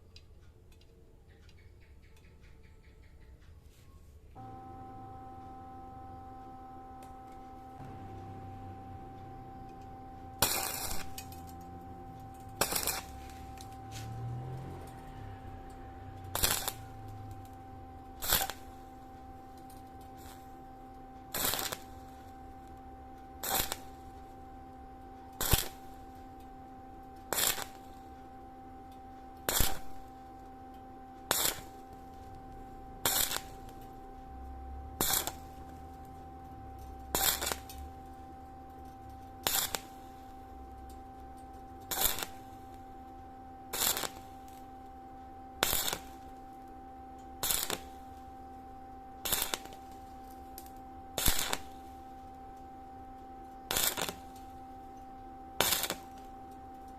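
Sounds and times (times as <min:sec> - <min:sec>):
steady electrical hum: 0:03.6 - 0:56.9
welding arc crackling: 0:04.4 - 0:24.4, 0:25.3 - 0:26.5, 0:27.2 - 0:28.4, 0:29.4 - 0:30.5, 0:31.2 - 0:34.1, 0:35.0 - 0:42.9, 0:43.7 - 0:44.8, 0:45.6 - 0:46.6, 0:47.2 - 0:48.4, 0:49.2 - 0:52.2, 0:53.6 - 0:54.6, 0:55.6 - 0:56.3.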